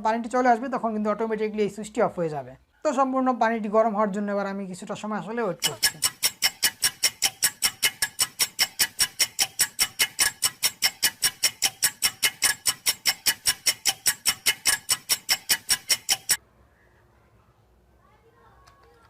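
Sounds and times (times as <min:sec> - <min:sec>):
clock ticking fast: 0:05.6 - 0:16.4.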